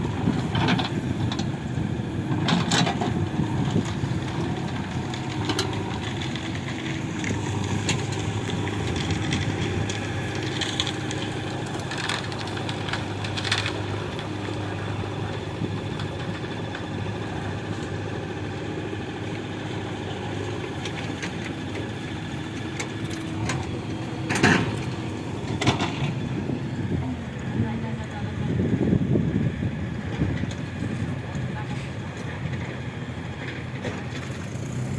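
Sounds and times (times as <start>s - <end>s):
diesel engines running: 0.0s - 34.9s
crunching clatters: 2.4s - 14.8s.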